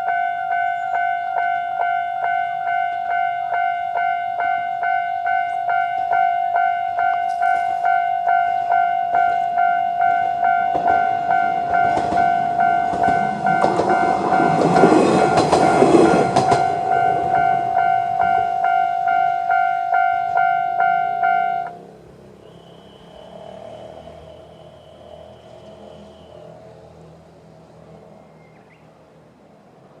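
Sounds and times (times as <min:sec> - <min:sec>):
level crossing warning bell: 0:00.0 - 0:21.8
railcar rumbling and clattering: 0:00.0 - 0:30.0.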